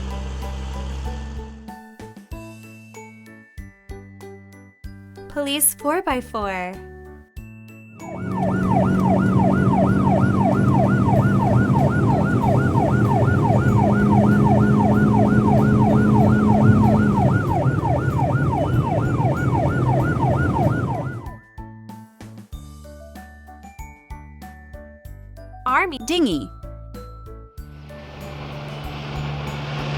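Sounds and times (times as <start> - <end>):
engine hum: 0.0 - 1.7, 8.0 - 21.4, 27.8 - 29.9
police siren yelping: 8.0 - 21.4.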